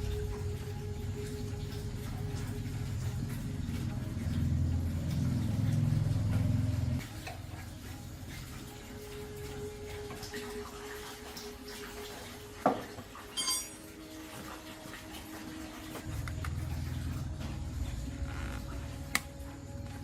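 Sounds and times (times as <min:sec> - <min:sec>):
low steady hum: 0:00.0 - 0:12.3, 0:15.6 - 0:20.0
metallic clink of tools: 0:13.3 - 0:13.9.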